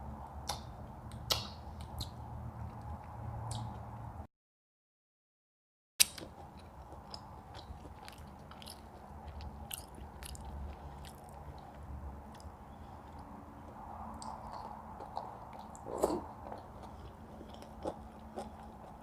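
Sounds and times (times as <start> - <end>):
chewing and biting food: 6.0 - 19.0.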